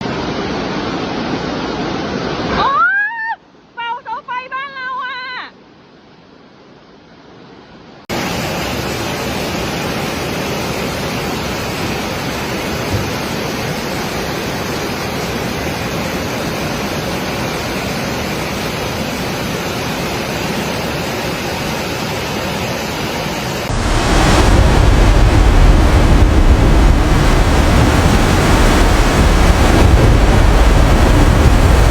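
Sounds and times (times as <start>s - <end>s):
rushing floodwater roar: 8.1s - 31.9s.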